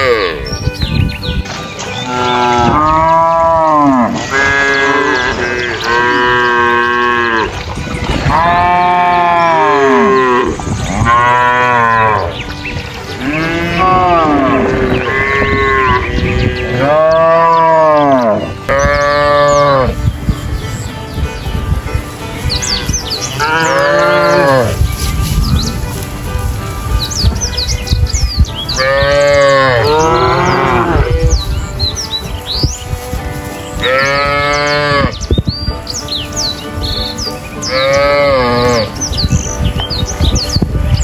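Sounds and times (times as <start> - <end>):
cattle mooing: 2.1 - 7.6, 8.2 - 12.3, 13.2 - 20.0, 23.4 - 24.8, 28.7 - 31.5, 33.8 - 35.2, 37.6 - 39.0.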